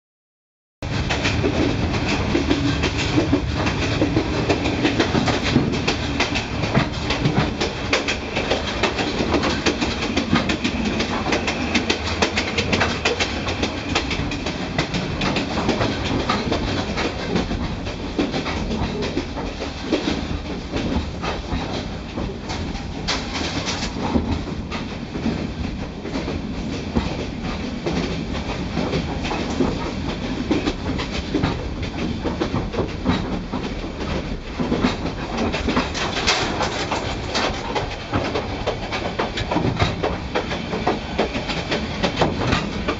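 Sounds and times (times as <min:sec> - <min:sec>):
train carriage rattling and knocking: 0:00.8 - 0:42.9
train wheels clacking over rail joints: 0:00.9 - 0:42.9.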